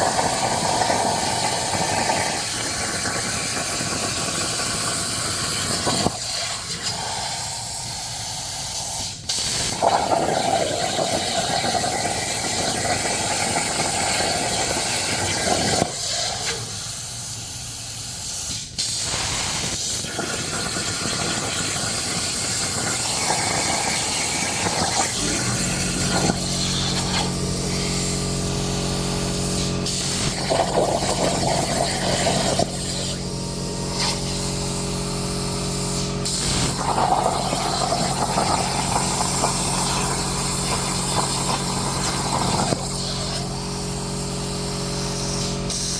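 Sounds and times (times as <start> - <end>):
plasma cutter hissing: 0.0 - 45.9
steady low hum: 23.8 - 34.8.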